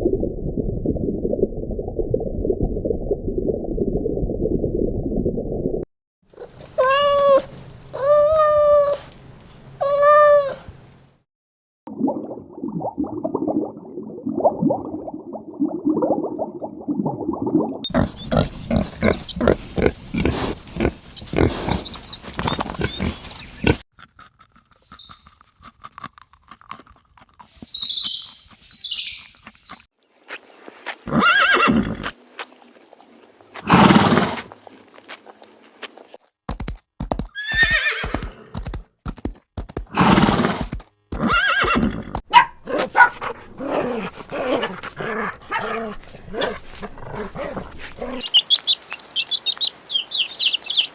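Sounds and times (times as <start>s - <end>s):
horse whinnies: 31.1s - 32.1s, 33.7s - 34.5s, 37.4s - 38.6s, 39.9s - 48.3s.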